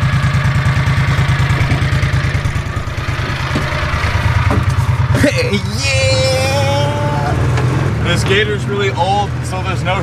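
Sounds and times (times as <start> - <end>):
utility vehicle engine throbbing: 0.0 - 10.0.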